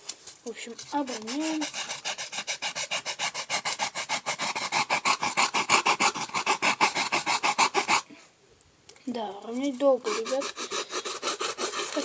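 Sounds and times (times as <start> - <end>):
file rasping on foam: 0.6 - 8.1, 10.0 - 12.0.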